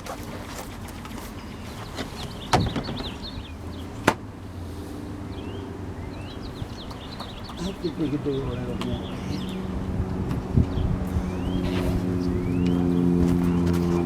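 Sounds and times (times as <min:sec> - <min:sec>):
sharp knocks: 0:02.5 - 0:03.2.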